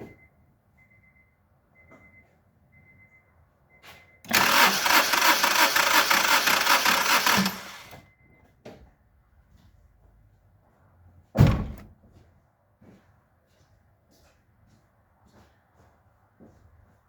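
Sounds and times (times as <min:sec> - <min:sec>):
starter cranking engine: 0:04.3 - 0:08.0.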